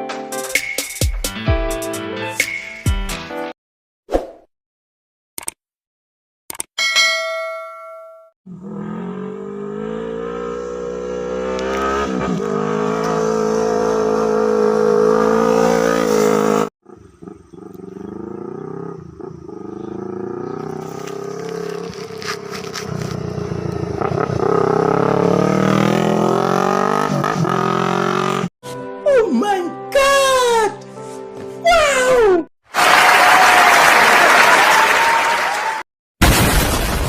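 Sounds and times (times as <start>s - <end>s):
motorcycle engine under load: 18.1s - 26.6s.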